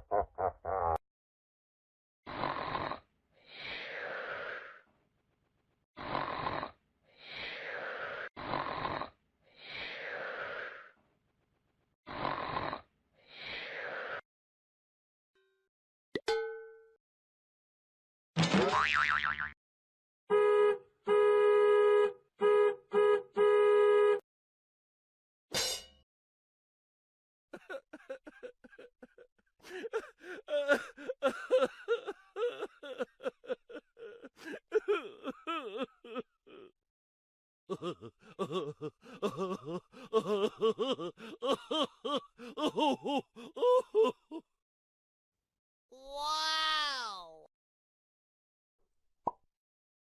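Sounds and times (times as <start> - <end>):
cartoonish voice effects: 46.0 - 47.5.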